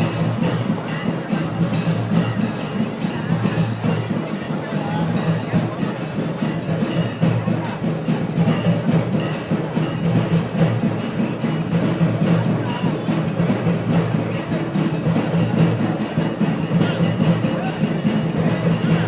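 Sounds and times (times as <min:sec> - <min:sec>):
rhythmic percussion: 0:00.0 - 0:19.0.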